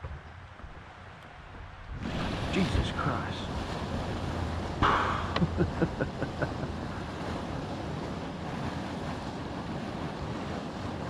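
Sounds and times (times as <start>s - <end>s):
wind on microphone: 0.0s - 11.0s
river water rushing: 1.9s - 9.4s.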